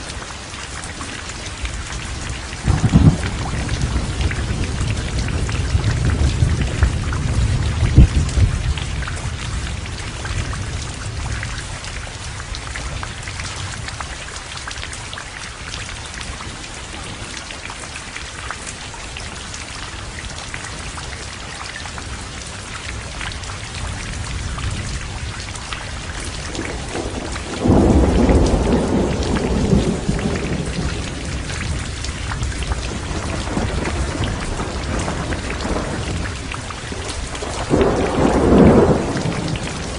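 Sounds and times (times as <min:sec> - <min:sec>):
heavy rain falling: 0:00.0 - 0:39.9
thunder rumble: 0:02.1 - 0:12.2, 0:23.8 - 0:39.9
loud thunderclap: 0:02.6 - 0:09.4, 0:26.5 - 0:39.9.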